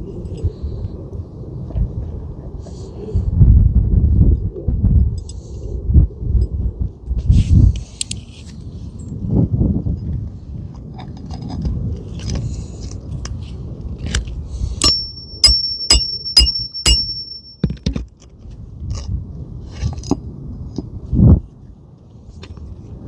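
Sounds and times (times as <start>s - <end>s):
hammer striking metal tool: 14.8s - 17.7s.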